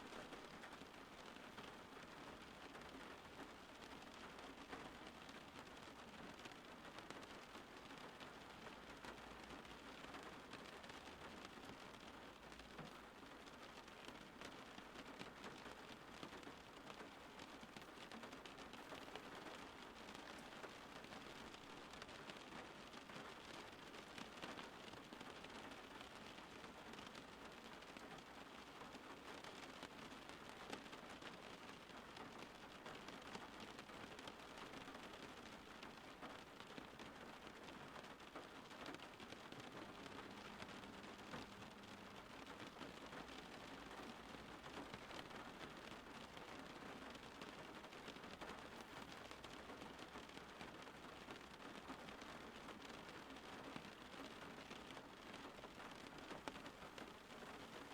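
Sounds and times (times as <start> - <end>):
steady rain falling: 0.0 - 57.9.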